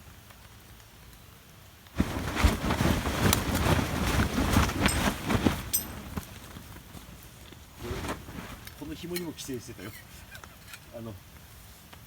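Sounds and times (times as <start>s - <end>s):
fabric flapping: 1.9s - 9.5s.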